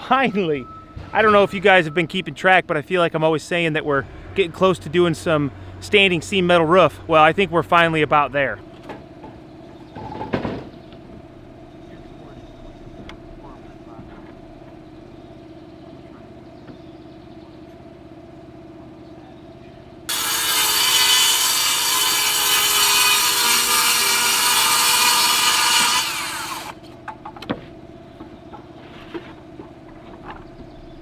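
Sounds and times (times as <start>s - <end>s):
circular saw cutting sheathing: 20.1s - 26.8s.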